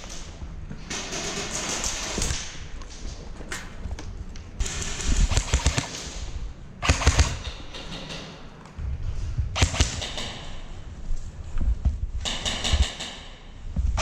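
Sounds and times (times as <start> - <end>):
airsoft guns firing rapid pops: 0.9 - 2.6, 4.6 - 6.2, 6.8 - 8.3, 9.6 - 10.6, 12.2 - 13.4.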